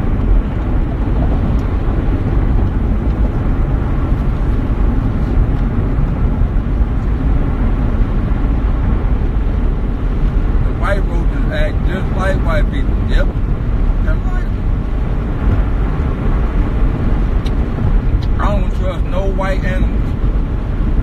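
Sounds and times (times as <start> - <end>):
loud low rumble: 0.0 - 21.0.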